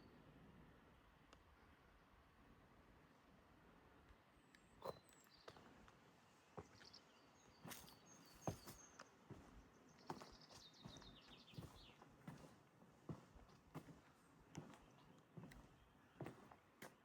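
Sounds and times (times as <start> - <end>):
footsteps on stone path: 6.6 - 7.0, 7.6 - 17.0
small birds chirping: 6.6 - 12.6, 13.2 - 17.0.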